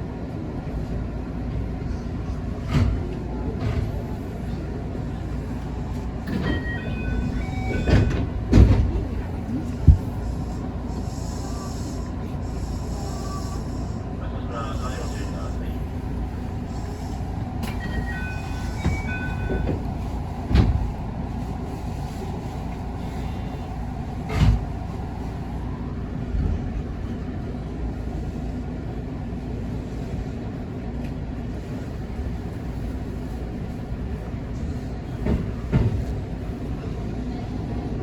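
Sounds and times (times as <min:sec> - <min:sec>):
train wheels rumbling: 0:00.1 - 0:38.0
track knocks: 0:06.2 - 0:10.4.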